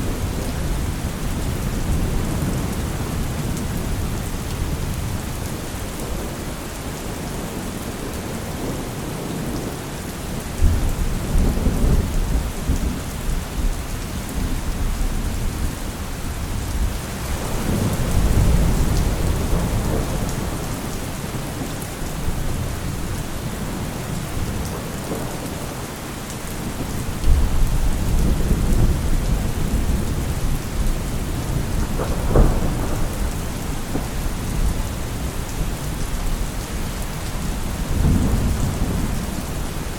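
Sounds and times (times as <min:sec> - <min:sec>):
steady rain falling: 0:00.0 - 0:39.9
thunder rumbling: 0:16.6 - 0:21.4, 0:26.6 - 0:39.9.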